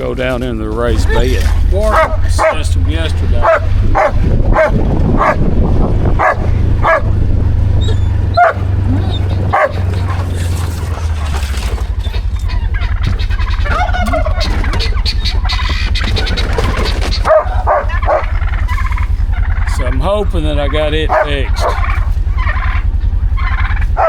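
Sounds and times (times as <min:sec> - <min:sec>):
low rumble: 0:00.0 - 0:24.0
dog barking: 0:01.8 - 0:07.2, 0:07.8 - 0:10.6, 0:17.1 - 0:19.2, 0:21.1 - 0:22.2, 0:23.8 - 0:24.0
fowl calls: 0:07.8 - 0:20.0, 0:20.6 - 0:24.0.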